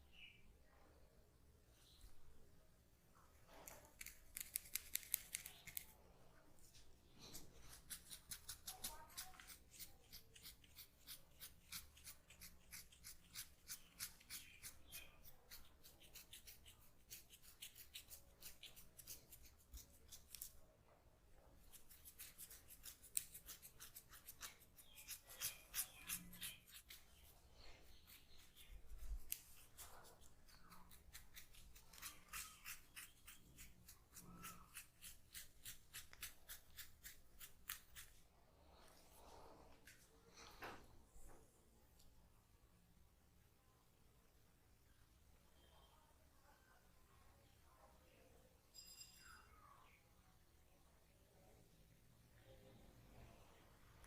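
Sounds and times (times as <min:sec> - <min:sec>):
scissors snipping: 0:03.6 - 0:05.9, 0:07.6 - 0:14.8, 0:21.7 - 0:27.0, 0:29.2 - 0:38.1.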